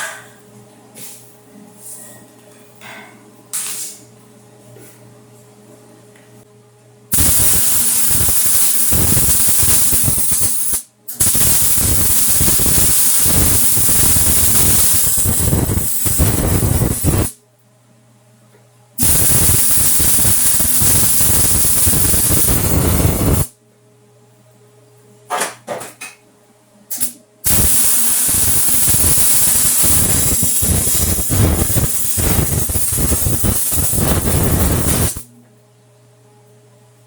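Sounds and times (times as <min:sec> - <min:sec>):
steady low hum: 0:04.1 - 0:25.0, 0:26.5 - 0:37.0
arc welding crackling: 0:07.1 - 0:17.4, 0:19.0 - 0:23.5, 0:26.9 - 0:35.3.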